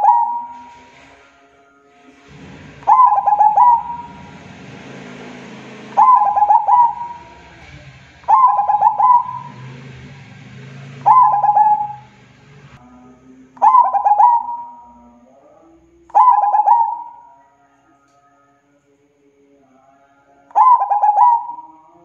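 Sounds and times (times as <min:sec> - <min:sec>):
dove cooing: 0:00.0 - 0:00.8, 0:02.8 - 0:04.3, 0:06.0 - 0:07.4, 0:08.3 - 0:09.8, 0:11.0 - 0:12.1, 0:13.6 - 0:14.8, 0:16.1 - 0:17.3, 0:20.6 - 0:21.8.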